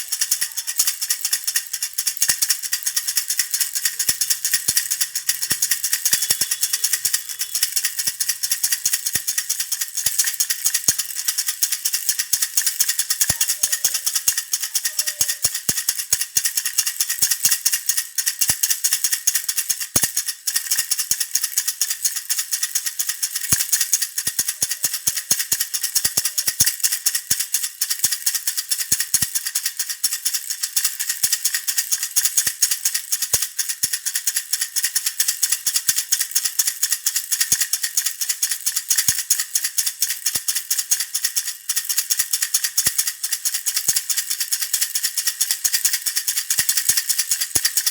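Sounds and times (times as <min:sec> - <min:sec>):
baby rattle shaking: 0:00.0 - 0:47.9.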